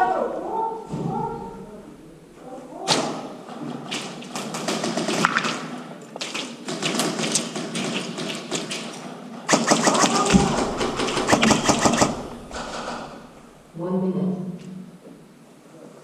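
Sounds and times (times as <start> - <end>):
airsoft guns firing: 4.4 - 5.7, 9.5 - 13.8.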